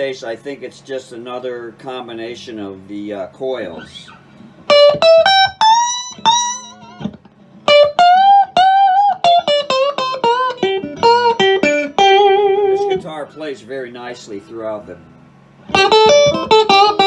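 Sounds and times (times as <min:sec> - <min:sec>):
electric guitar lead line: 0:03.6 - 0:17.0.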